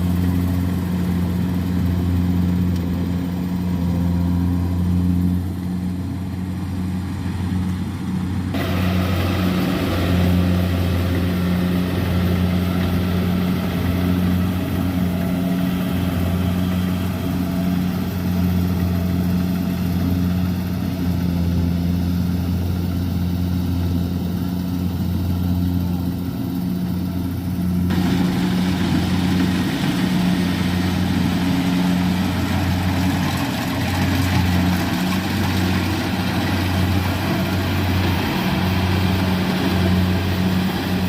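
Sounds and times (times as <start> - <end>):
diesel engine humming: 0.0 - 41.0
rushing machine noise: 8.5 - 21.0, 27.2 - 41.0.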